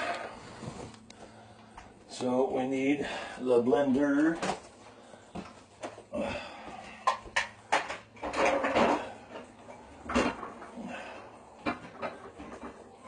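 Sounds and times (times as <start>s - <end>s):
knocks and clatters of kitchen items: 4.1s - 4.7s, 6.7s - 13.0s.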